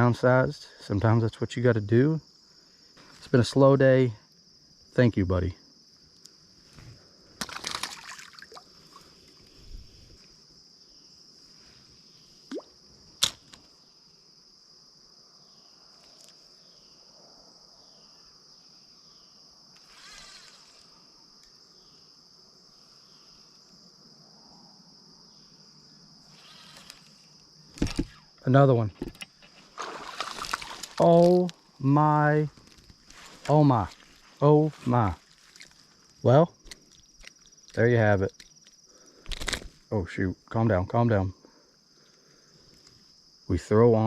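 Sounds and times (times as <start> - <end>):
insects droning: 0.0 - 44.0
water dripping: 7.4 - 8.7, 12.5 - 12.7.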